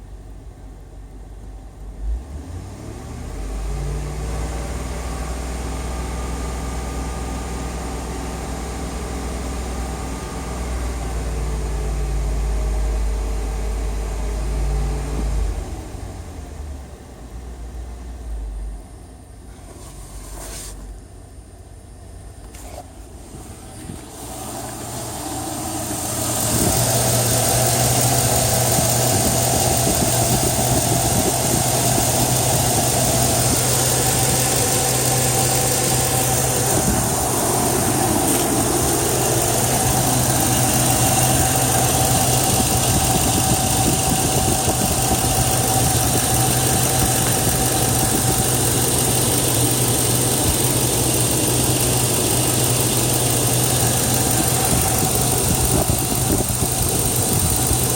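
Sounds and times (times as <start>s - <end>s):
car engine idling: 21.0s - 57.9s.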